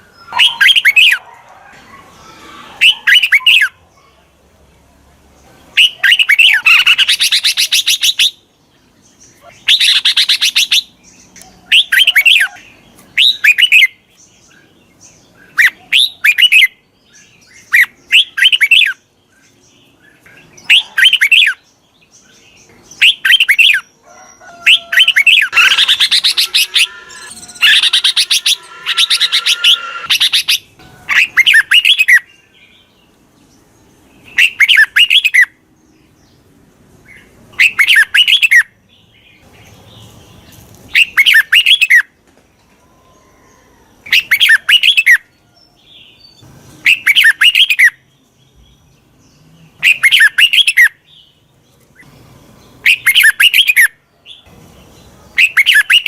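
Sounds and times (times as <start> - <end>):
bulbul song: 24.6 - 32.3.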